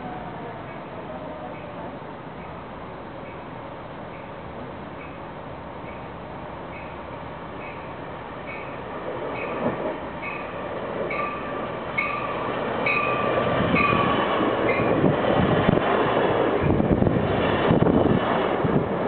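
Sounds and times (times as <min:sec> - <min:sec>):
train bell ringing: 0:00.0 - 0:15.0
train wheels rumbling: 0:00.0 - 0:19.0.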